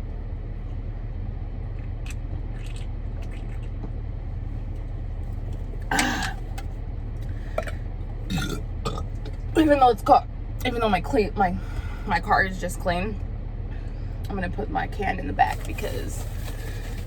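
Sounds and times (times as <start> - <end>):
car engine idling: 0.0 - 17.0
person clearing throat: 5.9 - 6.4.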